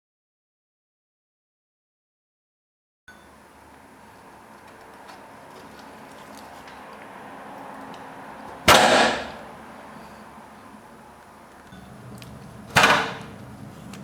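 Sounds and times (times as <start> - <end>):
sharp knocks: 8.5 - 9.5, 12.7 - 13.4.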